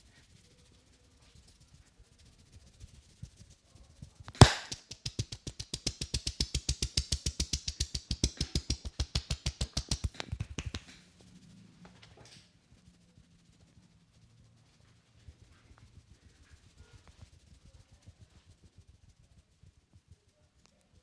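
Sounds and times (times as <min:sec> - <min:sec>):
hands tapping rapidly on a head: 0:04.4 - 0:11.0.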